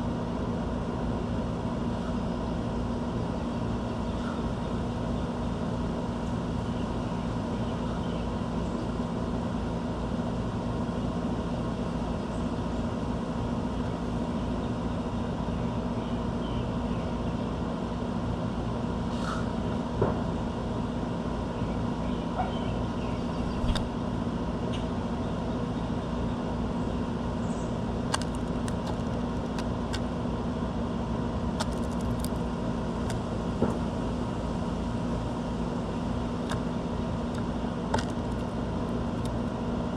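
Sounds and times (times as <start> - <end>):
low mechanical hum: 0.0 - 39.9
sharp clicks: 28.1 - 30.1, 31.6 - 32.4.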